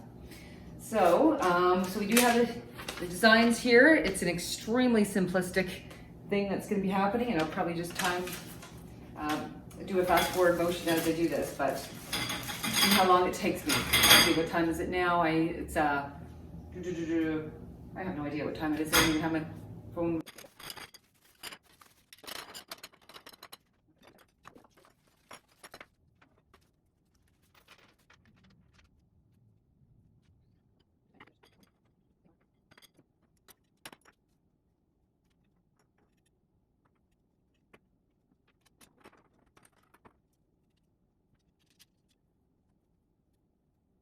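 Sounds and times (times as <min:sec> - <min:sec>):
trellis pieces clicking and rattling: 0:20.2 - 0:25.9.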